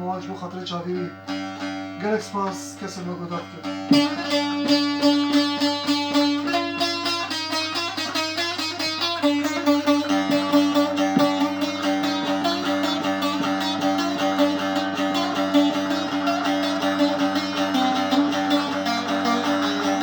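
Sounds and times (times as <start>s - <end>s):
plucked string instrument: 0.0s - 20.0s.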